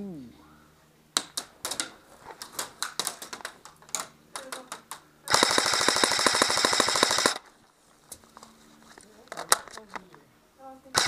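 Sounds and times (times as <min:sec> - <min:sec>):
airsoft gun shots: 0:05.3 - 0:07.5
airsoft rifle full-auto burst: 0:05.3 - 0:07.5.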